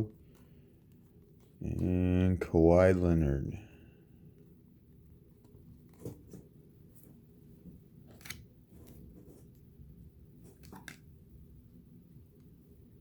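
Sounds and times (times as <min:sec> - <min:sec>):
faint low hum: 0:00.0 - 0:13.0
cards snapping and rustling: 0:08.1 - 0:09.1, 0:10.5 - 0:11.1.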